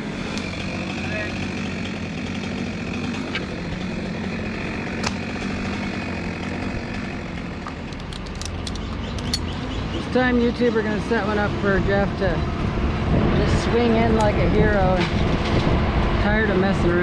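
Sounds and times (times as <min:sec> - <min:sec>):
chainsaw idling: 0:00.0 - 0:09.5
sharp clicks: 0:07.9 - 0:09.7.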